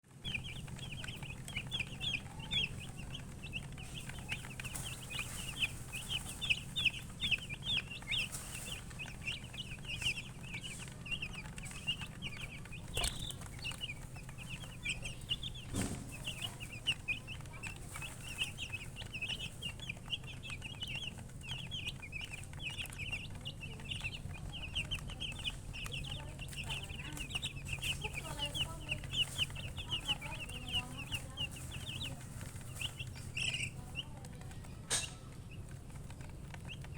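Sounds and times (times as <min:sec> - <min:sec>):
baby chicks peeping: 0:00.0 - 0:36.9
faint low hum: 0:00.0 - 0:36.9
sharp knocks: 0:15.5 - 0:16.6.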